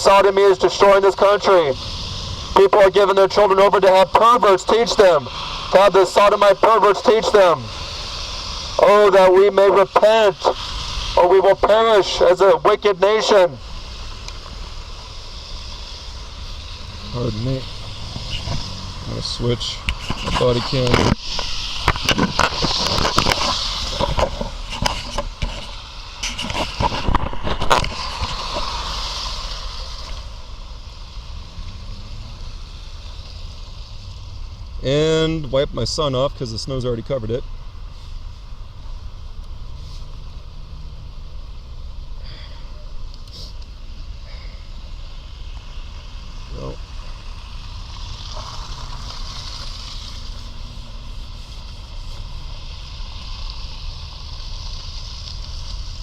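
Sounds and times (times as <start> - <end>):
constant hiss: 0.0 - 56.0
rushing outdoor noise: 0.0 - 56.0
low fluctuating rumble: 0.8 - 4.1, 13.6 - 26.2, 45.0 - 56.0.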